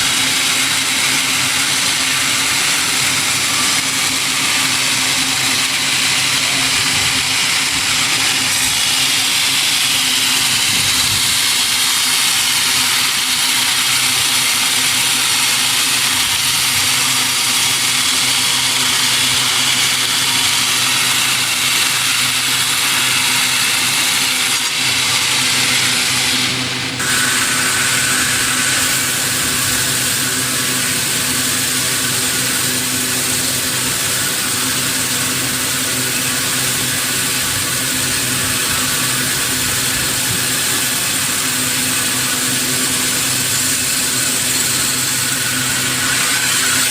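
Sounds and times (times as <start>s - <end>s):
sawmill machinery humming: 0.0s - 46.9s.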